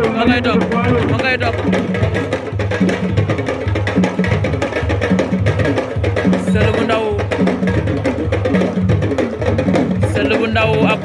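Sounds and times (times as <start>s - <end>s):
person singing or calling: 0.0s - 2.2s, 10.2s - 11.0s
drums in fast rhythm: 0.0s - 11.0s.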